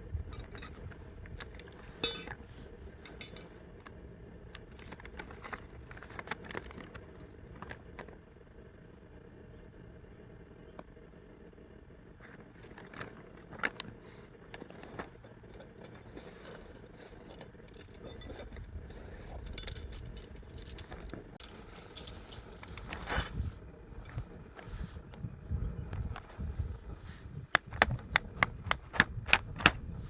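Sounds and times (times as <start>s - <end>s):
small metal pieces clinking: 1.7s - 2.5s, 3.1s - 3.5s, 15.2s - 23.4s.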